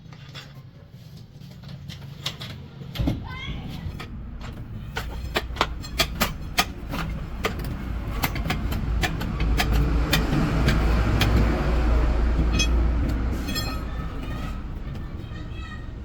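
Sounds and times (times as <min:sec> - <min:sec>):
engine rumble: 0:00.2 - 0:16.0
metallic clinks and knocks: 0:12.4 - 0:14.6.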